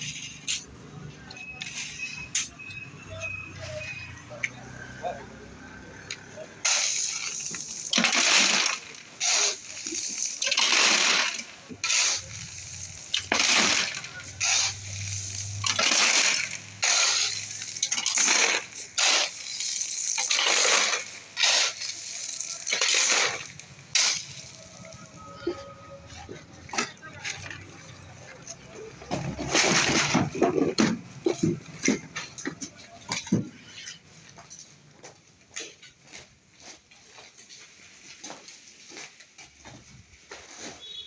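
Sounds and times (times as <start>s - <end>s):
shovel scraping gravel: 0.0s - 3.9s, 6.4s - 32.4s.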